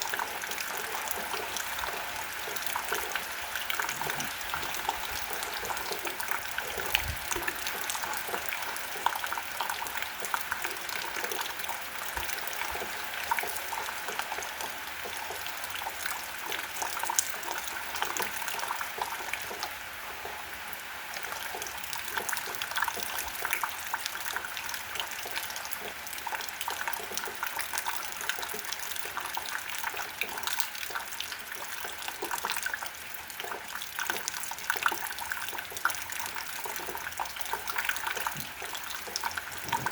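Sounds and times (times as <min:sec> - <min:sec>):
raindrops ticking and splashing: 0:00.0 - 0:39.9
steady rain falling: 0:00.0 - 0:39.9.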